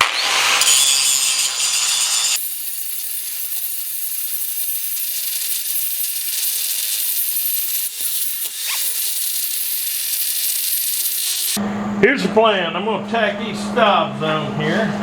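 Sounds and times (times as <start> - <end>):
grinder grinding metal: 0.0 - 11.6.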